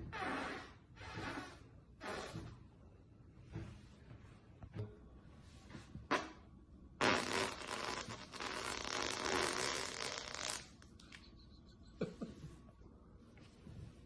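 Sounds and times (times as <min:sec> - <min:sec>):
sputtering fart: 0:00.0 - 0:02.7, 0:06.1 - 0:10.8.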